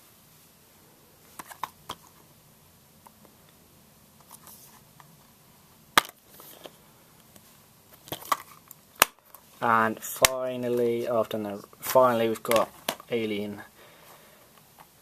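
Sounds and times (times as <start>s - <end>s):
plastic case snapping: 6.0s - 6.2s, 12.5s - 13.1s
plastic cases clicking: 8.0s - 9.4s, 12.5s - 13.1s.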